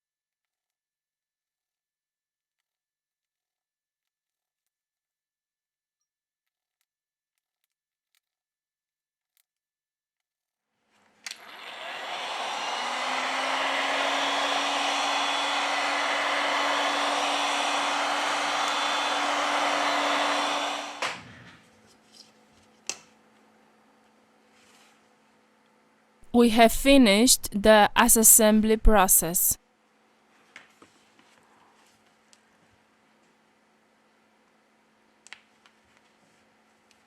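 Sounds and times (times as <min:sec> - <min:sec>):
electric blower motor blowing: 0:11.4 - 0:21.2.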